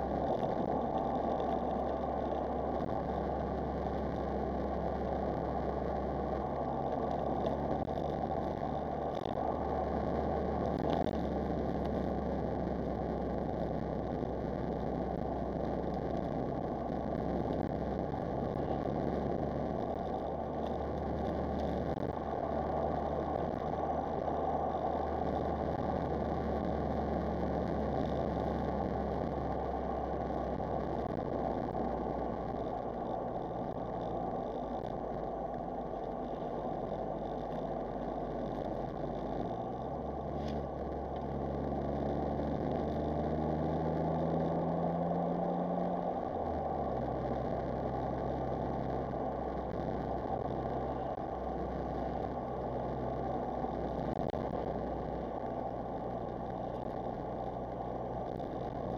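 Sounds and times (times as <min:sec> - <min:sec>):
car engine running: 0:00.0 - 0:58.9
road noise: 0:00.0 - 0:58.9.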